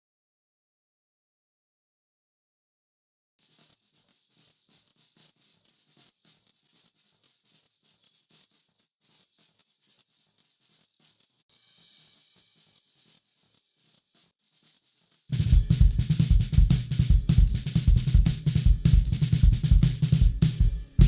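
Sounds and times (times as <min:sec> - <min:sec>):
hi-hat ticking pattern: 0:03.4 - 0:14.1, 0:15.1 - 0:21.0.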